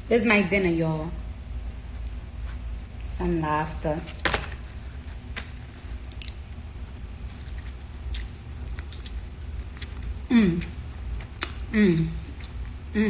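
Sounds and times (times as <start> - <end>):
low hum: 0.0 - 13.0
chewing and mouth sounds: 1.4 - 12.9.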